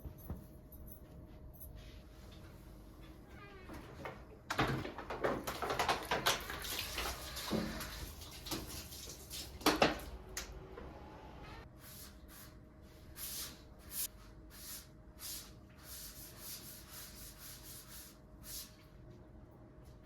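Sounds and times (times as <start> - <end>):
household items clattering: 4.5 - 8.8.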